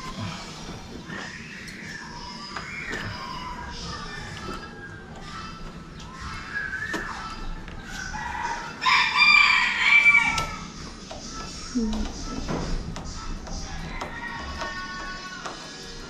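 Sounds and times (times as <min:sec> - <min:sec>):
rooster crowing: 0:07.9 - 0:10.8, 0:13.4 - 0:16.0.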